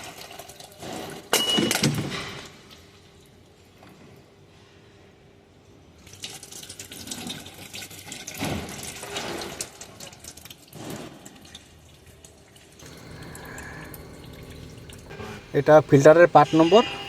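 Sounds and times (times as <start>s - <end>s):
liquid running and splashing: 12.8s - 17.0s.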